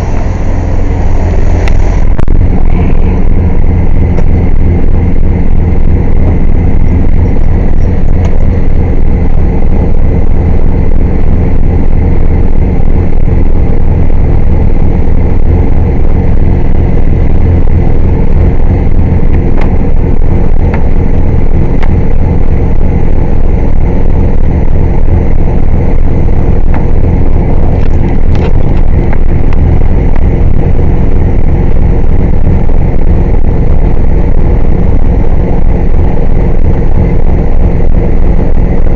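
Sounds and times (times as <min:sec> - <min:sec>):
air compressor running: 0:00.0 - 0:09.9.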